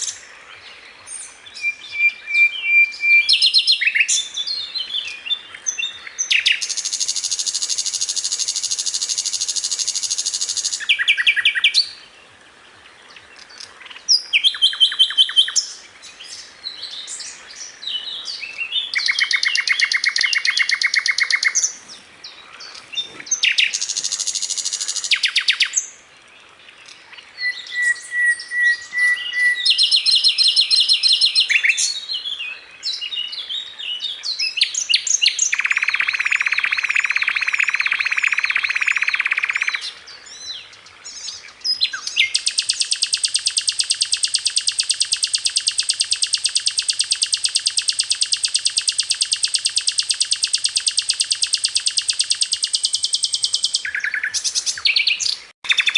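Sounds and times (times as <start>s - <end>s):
flycatcher song with buzzy trills: 42.3s - 54.0s.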